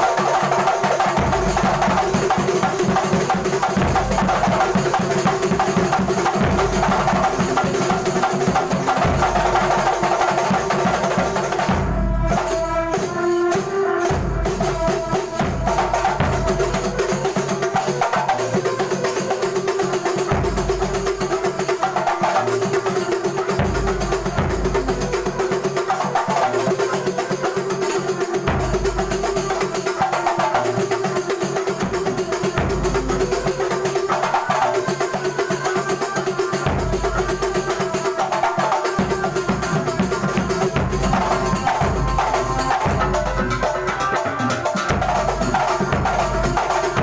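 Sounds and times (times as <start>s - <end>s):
frame drums and hand percussion: 0.0s - 47.0s.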